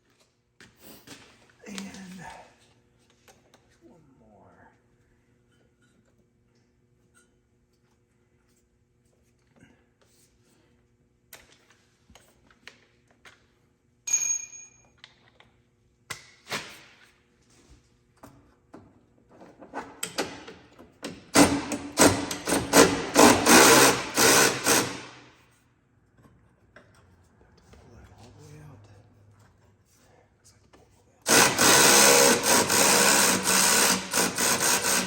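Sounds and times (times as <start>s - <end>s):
ratchet clicking: 31.3s - 35.0s.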